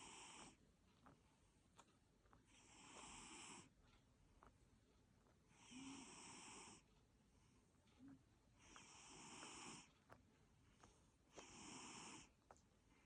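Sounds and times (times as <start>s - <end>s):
cat snoring softly: 0.0s - 0.6s, 2.5s - 3.9s, 5.5s - 7.0s, 8.0s - 10.2s, 10.8s - 13.0s.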